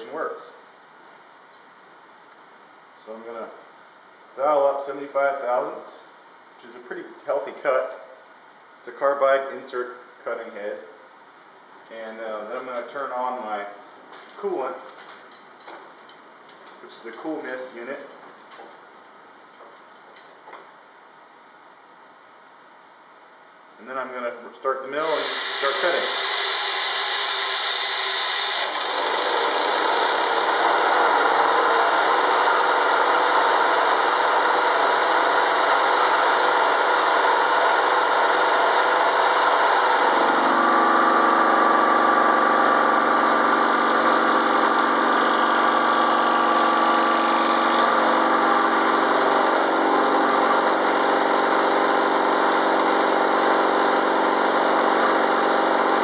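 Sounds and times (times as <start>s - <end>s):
milling machine cutting metal: 25.0s - 56.0s.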